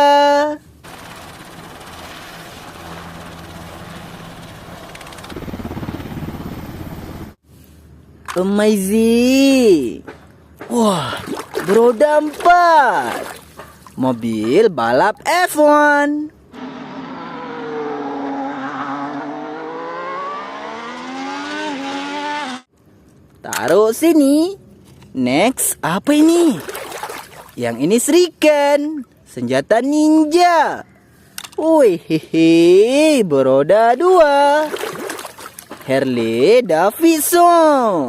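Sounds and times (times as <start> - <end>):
helicopter rotor chopping: 0.8 - 7.4
race car engine revving: 16.6 - 22.7.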